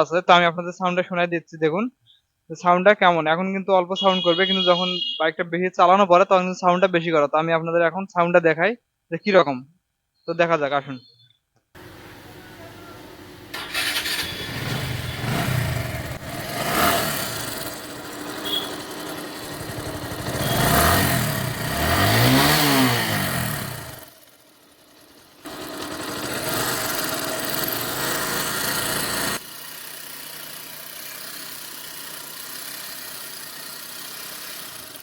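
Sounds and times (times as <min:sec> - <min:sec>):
motorcycle engine revving: 0:11.8 - 0:35.0
engine ticking: 0:13.5 - 0:35.0.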